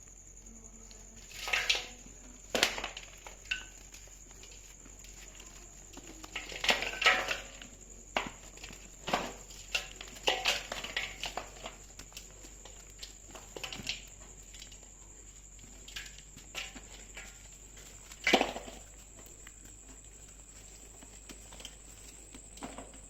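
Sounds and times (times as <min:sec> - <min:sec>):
dried mud crunching by hand: 0:01.2 - 0:23.0.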